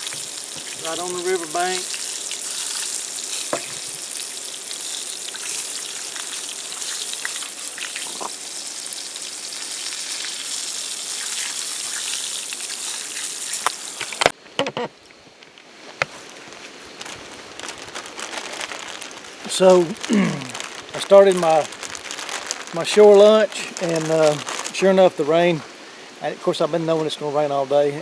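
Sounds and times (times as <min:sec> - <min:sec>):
fish sizzling in hot oil: 0:00.0 - 0:14.3, 0:18.4 - 0:24.9.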